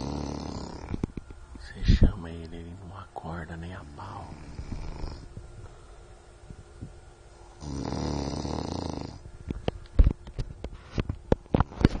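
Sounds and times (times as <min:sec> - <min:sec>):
man snoring: 0:00.0 - 0:01.0, 0:03.8 - 0:05.3, 0:07.6 - 0:09.2.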